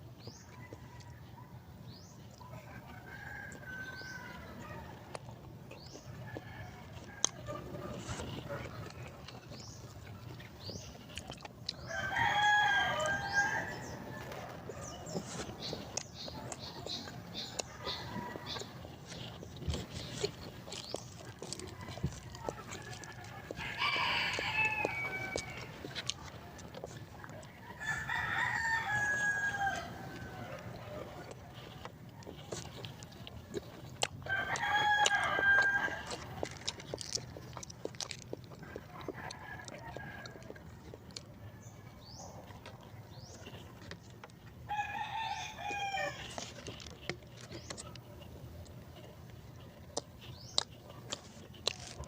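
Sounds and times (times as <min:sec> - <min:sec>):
rooster crowing: 0:02.6 - 0:05.0, 0:11.9 - 0:14.5, 0:21.5 - 0:25.8, 0:27.7 - 0:31.0, 0:34.2 - 0:36.3, 0:44.7 - 0:46.4
person eating: 0:03.0 - 0:52.0.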